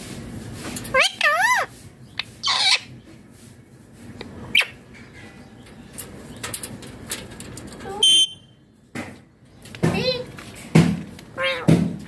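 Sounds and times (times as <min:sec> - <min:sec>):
parakeet screeching: 0:00.9 - 0:01.7, 0:02.4 - 0:02.9
parakeet squawking: 0:00.9 - 0:02.9.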